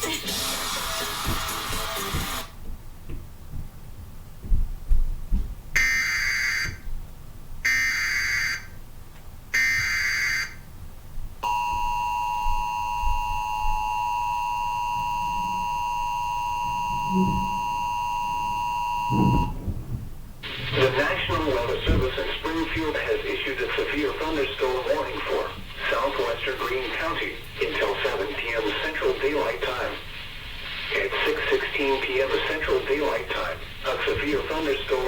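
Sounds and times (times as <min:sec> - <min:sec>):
data bursts from television: 0:00.0 - 0:02.5, 0:20.4 - 0:35.0
two-tone attention signal: 0:11.4 - 0:19.6
low thumps: 0:19.1 - 0:22.9.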